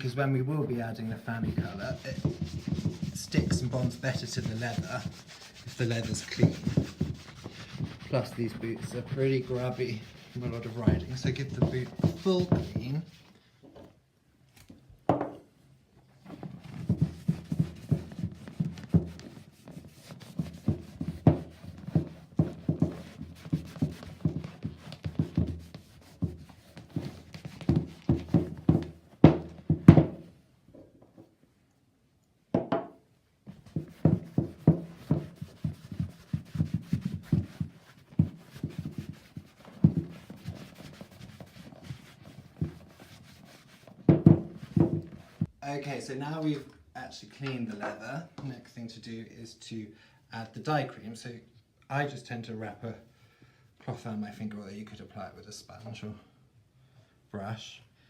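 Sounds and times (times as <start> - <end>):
cloth rubbing leather boot: 1.0 - 13.4, 16.2 - 30.3, 33.4 - 45.5.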